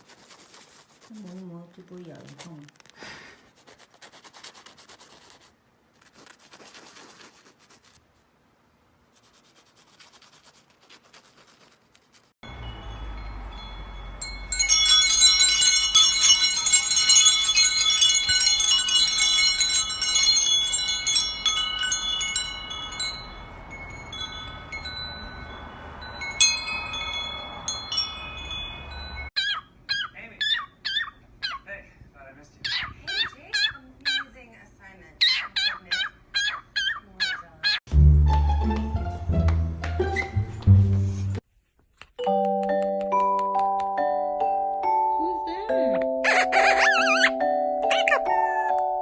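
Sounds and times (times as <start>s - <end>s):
metal chimes ringing: 12.4s - 29.3s.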